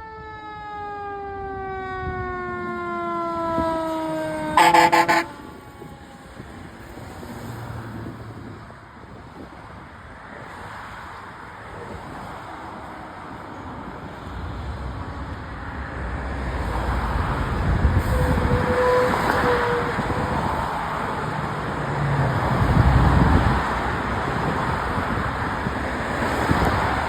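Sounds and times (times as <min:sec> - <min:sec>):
fire truck engines rumbling: 0:00.0 - 0:27.0
horn note: 0:04.6 - 0:05.4.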